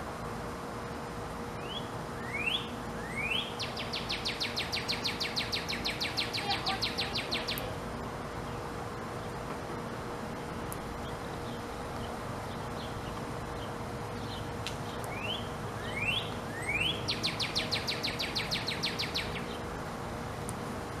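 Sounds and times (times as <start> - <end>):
background hiss: 0.0 - 21.0
bird singing whistles: 1.6 - 7.6, 15.1 - 19.6.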